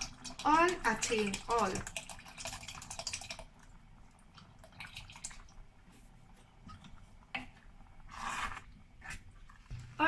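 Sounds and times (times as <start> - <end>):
liquid drips: 0.0 - 6.0.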